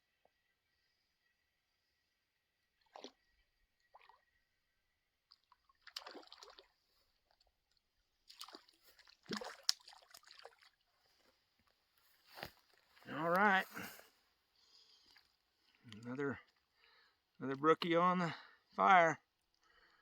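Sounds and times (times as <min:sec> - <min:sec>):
faint water splashing: 0:02.8 - 0:04.3, 0:05.2 - 0:11.4.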